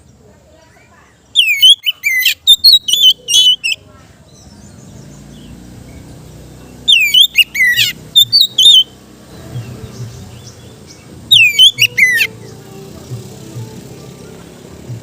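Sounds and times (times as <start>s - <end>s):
bird singing whistled phrases: 1.3s - 3.8s, 6.8s - 9.0s, 11.3s - 12.3s.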